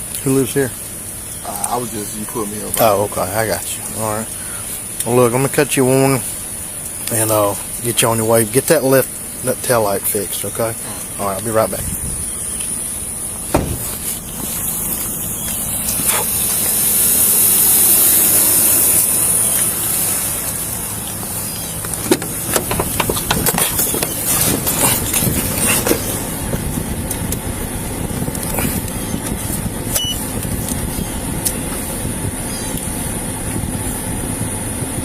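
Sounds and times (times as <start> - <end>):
vehicle and road noise: 0.0 - 35.0
clicks and rustles on microphone: 21.9 - 26.3.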